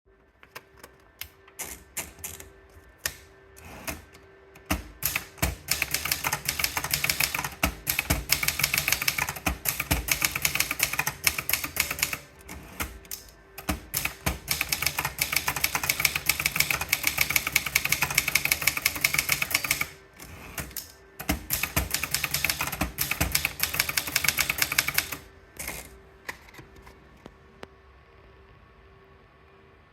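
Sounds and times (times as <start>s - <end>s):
typewriter typing: 3.1s - 26.0s.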